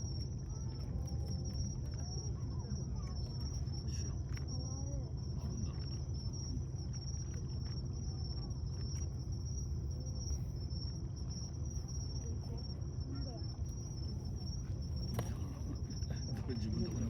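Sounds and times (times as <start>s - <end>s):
insects chirring: 0.0s - 17.0s
distant crowd voices: 9.8s - 17.0s.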